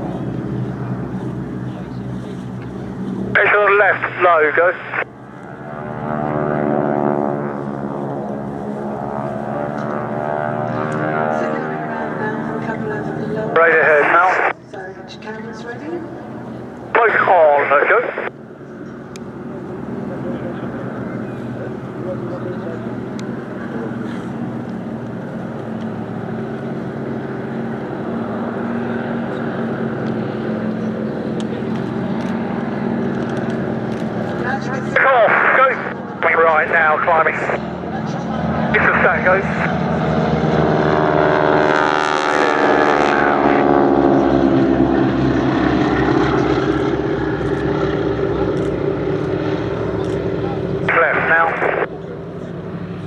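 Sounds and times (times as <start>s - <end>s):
biplane engine droning: 0.0s - 53.0s.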